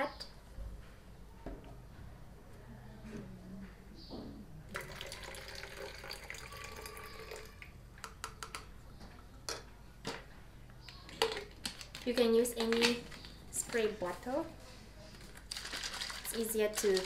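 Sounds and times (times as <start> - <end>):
liquid pouring into water: 4.7 - 7.7.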